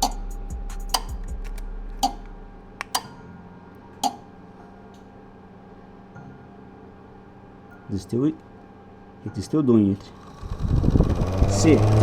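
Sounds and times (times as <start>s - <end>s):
relays clicking: 0.0s - 3.2s
low hum: 0.0s - 7.9s, 10.0s - 12.0s.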